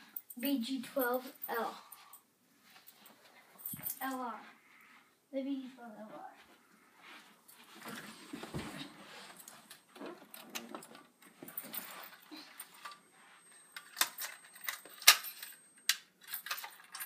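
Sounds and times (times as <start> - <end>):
keys jangling: 10.4 - 17.0.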